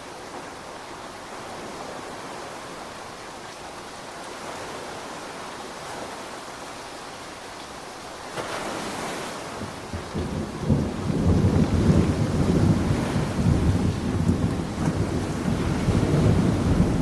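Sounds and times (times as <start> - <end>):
steady rain hiss: 0.0 - 17.0
thunder rumbling: 9.5 - 17.0.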